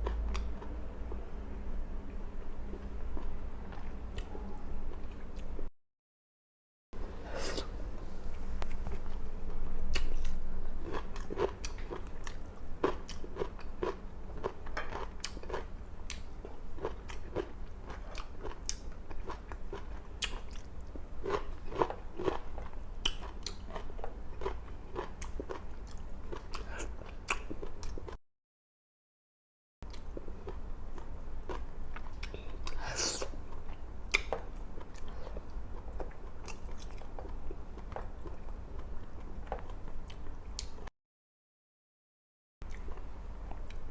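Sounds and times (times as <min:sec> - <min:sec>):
person chewing with crisp crunches: 0:07.3 - 0:28.2, 0:29.9 - 0:40.8.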